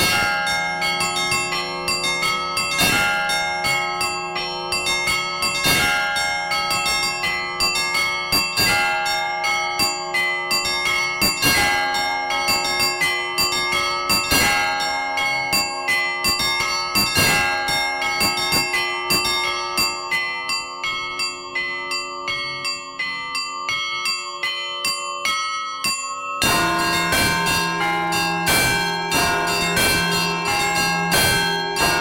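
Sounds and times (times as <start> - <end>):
middle bells ringing: 0.0 - 32.0
small high bells ringing: 0.0 - 32.0
deep bell strokes: 26.4 - 32.0.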